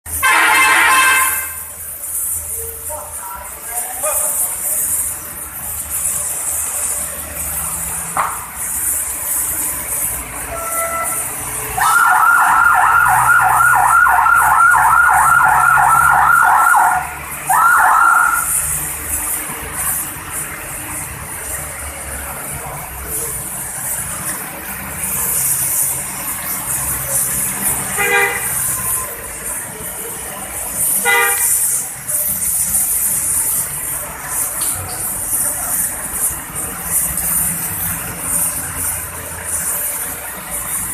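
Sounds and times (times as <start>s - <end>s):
bus horn toots: 0.1s - 1.6s, 10.6s - 11.3s, 27.9s - 28.6s, 31.0s - 31.6s
warbling multi-tone air horn: 0.1s - 1.7s, 10.4s - 18.6s
bus engine hum: 1.4s - 11.9s, 18.4s - 40.9s.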